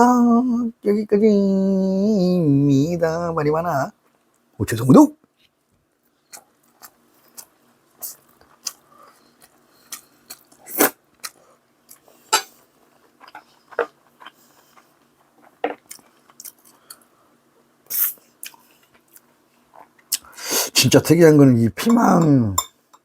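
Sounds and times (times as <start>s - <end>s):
person chewing and crunching food: 6.3s - 17.1s.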